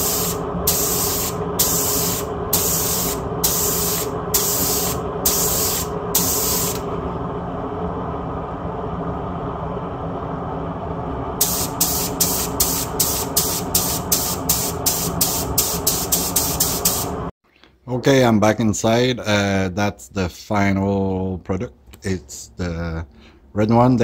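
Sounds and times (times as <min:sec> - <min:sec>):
aerosol spray can hissing: 0:00.0 - 0:06.8, 0:11.4 - 0:17.2
low mechanical hum: 0:00.0 - 0:17.3.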